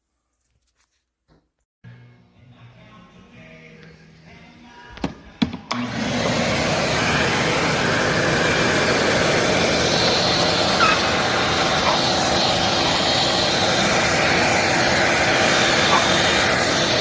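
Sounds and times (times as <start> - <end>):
shop vacuum motor rushing: 5.7 - 17.0.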